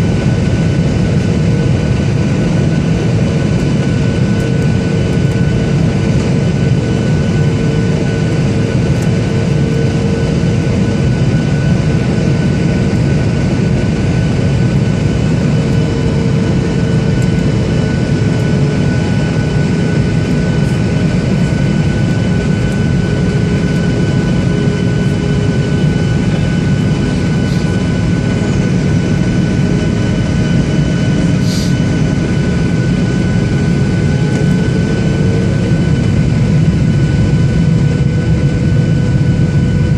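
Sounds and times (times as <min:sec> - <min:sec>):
jet engine cabin roar: 0:00.0 - 0:39.9
brief high hiss: 0:31.4 - 0:31.8.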